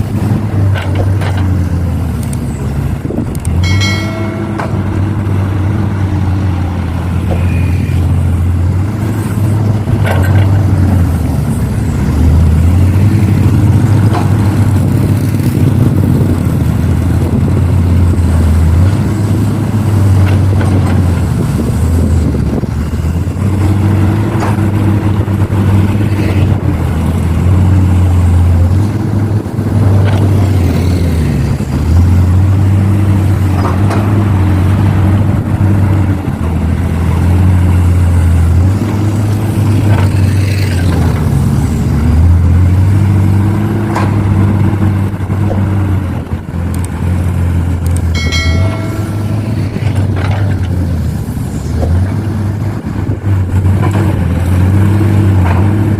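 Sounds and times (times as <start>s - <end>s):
excavator diesel engine under load: 0.0s - 55.9s
high-pitched tone: 3.6s - 6.5s, 48.2s - 50.1s.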